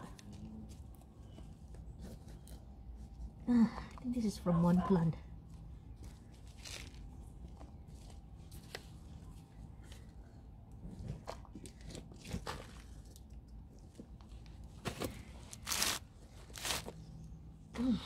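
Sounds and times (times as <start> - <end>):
hands digging in soil: 15.5 - 17.0.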